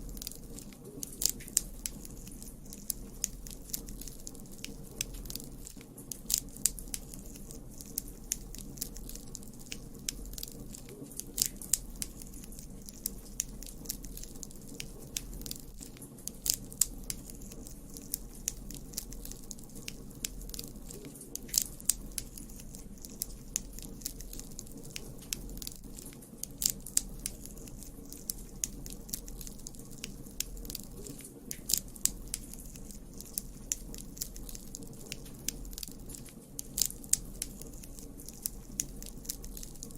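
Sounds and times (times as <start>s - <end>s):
campfire crackling and popping: 0.0s - 39.9s.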